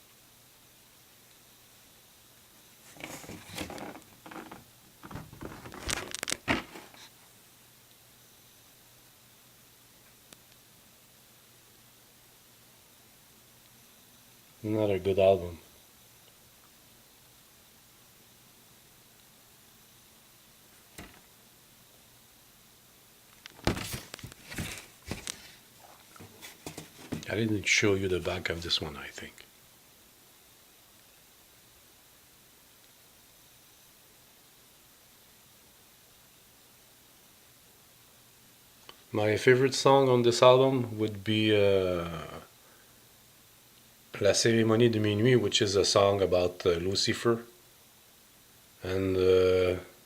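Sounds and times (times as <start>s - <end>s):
cardboard sleeve rustling: 2.8s - 7.1s, 23.6s - 27.5s.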